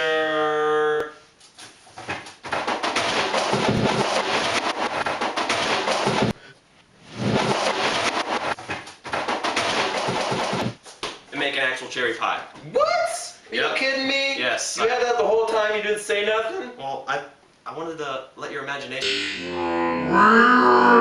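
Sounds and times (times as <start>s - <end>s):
fast percussive drum music: 2.5s - 6.4s, 7.2s - 10.8s.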